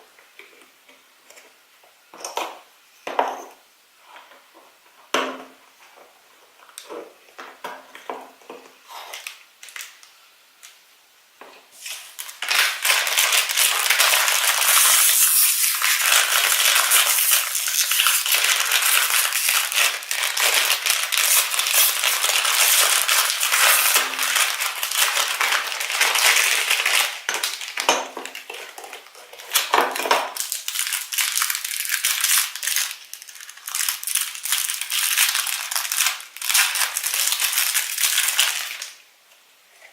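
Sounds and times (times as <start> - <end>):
plastic wrapping crackling: 8.9 - 10.8, 11.8 - 39.0.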